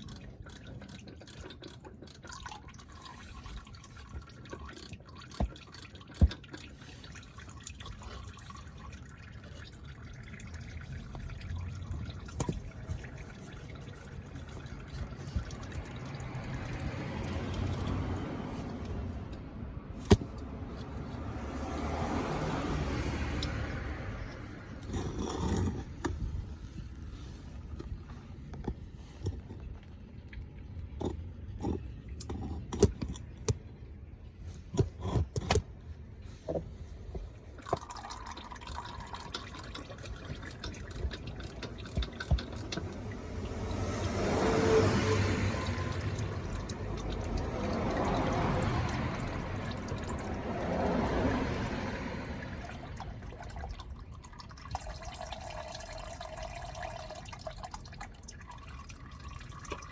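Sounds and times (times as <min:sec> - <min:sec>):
oil pouring and dripping: 0:00.0 - 0:59.9
handling clicks and knocks: 0:11.0 - 0:21.2, 0:30.8 - 0:33.7, 0:38.8 - 0:43.2.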